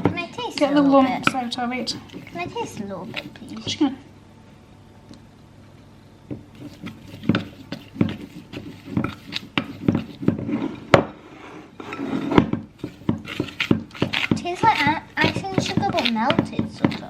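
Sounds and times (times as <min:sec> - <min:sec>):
spoon scraping mixing bowl: 0:00.0 - 0:03.9, 0:06.3 - 0:17.0.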